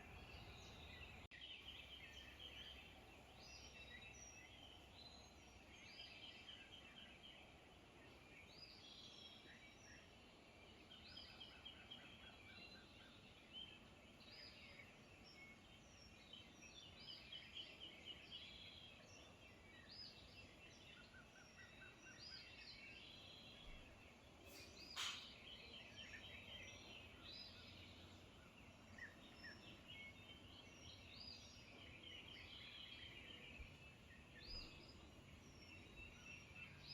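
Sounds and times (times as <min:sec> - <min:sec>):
birds chirping and trilling: 0:00.0 - 0:36.9
sharp click: 0:24.9 - 0:25.4.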